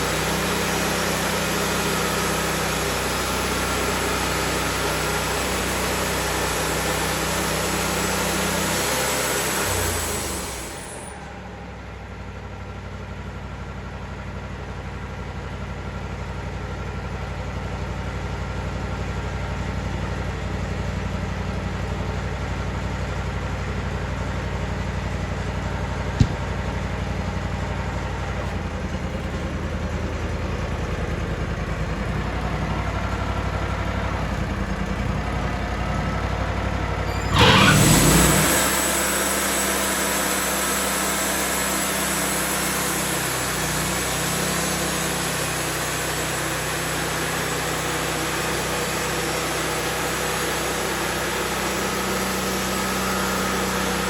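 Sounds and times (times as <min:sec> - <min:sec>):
sawmill engine running: 0:00.0 - 0:54.0
band saw cutting log: 0:37.1 - 0:54.0.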